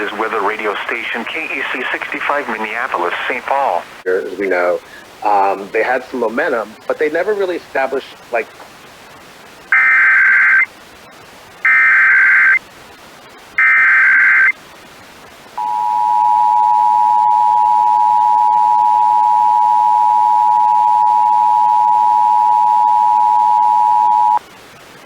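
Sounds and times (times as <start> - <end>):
digital data bursts: 9.7 - 10.8, 11.6 - 12.6, 13.6 - 14.6
two-tone attention signal: 15.6 - 24.4.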